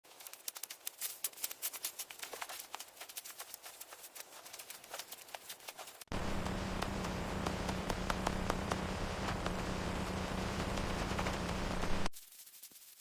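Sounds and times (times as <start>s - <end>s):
sharp thin crackling clicks: 0.1s - 6.0s.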